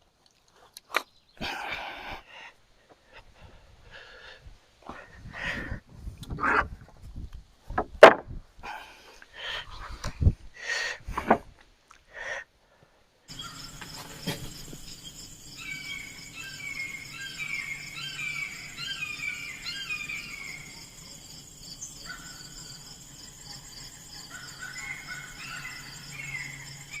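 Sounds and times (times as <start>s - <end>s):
birds singing: 13.3s - 27.0s
high insect trill: 13.3s - 27.0s.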